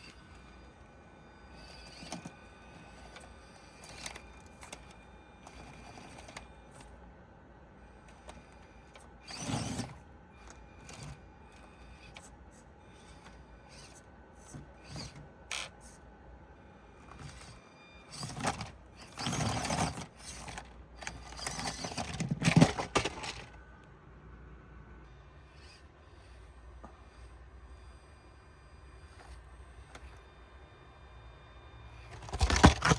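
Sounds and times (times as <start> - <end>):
toy car motor and gear whir: 0.0 - 7.0, 7.8 - 23.6, 25.3 - 32.9
scraping and clicking: 17.1 - 23.6, 32.1 - 32.9.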